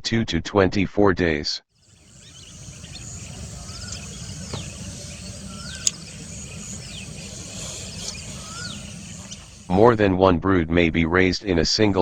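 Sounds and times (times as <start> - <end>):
bird calls and chirps: 1.8 - 9.9
falling whistles: 1.8 - 9.9
low rumbling background: 1.8 - 10.0.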